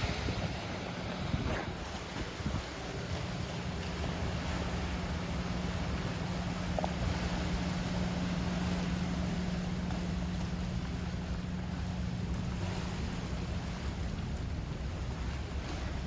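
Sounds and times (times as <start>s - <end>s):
boat engine drone: 0.0s - 16.0s
sea waves: 0.0s - 16.0s
wind: 0.0s - 16.0s.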